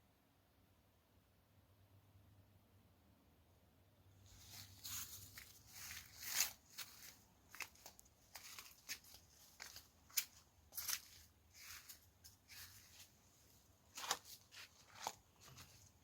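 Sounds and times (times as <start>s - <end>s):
crisp crackles and rustles: 4.2s - 16.0s.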